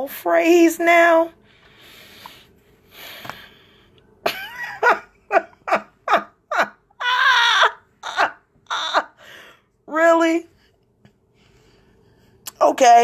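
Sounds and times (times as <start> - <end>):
person laughing: 4.2 - 9.3.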